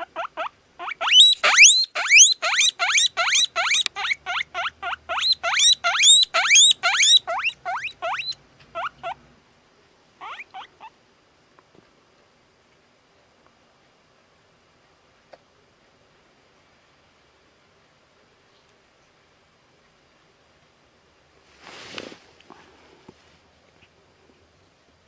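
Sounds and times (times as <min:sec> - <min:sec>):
guinea pig squeaking: 0:00.0 - 0:09.2, 0:10.2 - 0:10.9.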